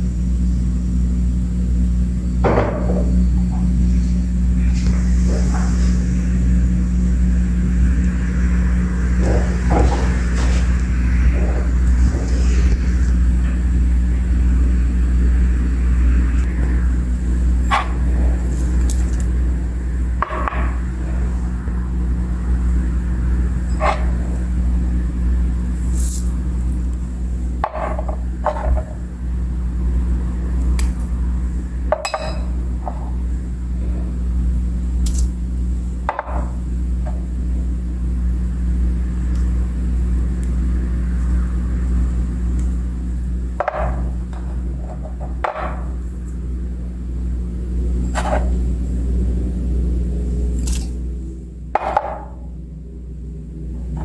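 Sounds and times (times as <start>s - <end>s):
steady low hum: 0.0s - 54.0s.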